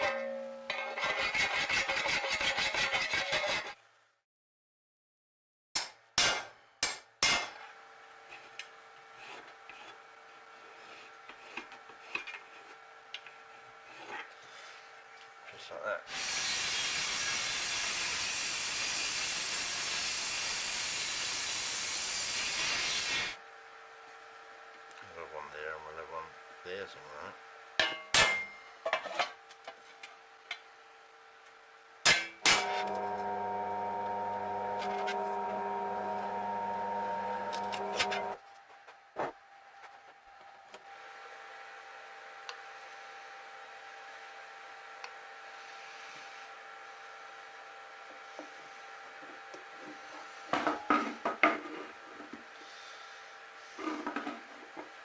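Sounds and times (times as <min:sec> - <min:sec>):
steady multi-tone hum: 0:23.4 - 0:53.8.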